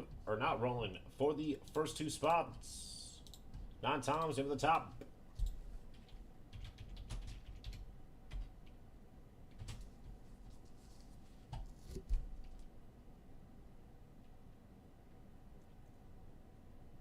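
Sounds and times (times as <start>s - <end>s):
computer keyboard typing: 3.2s - 8.8s, 9.5s - 10.2s.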